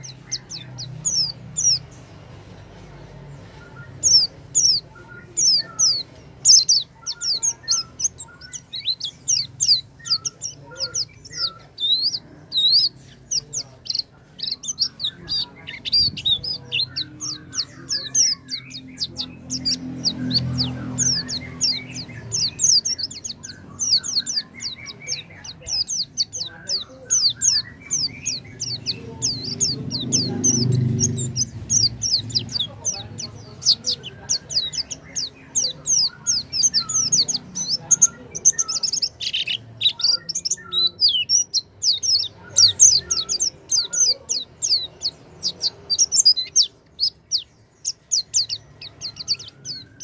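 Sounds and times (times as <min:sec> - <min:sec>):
bird chirping and twittering: 0:00.0 - 0:50.0.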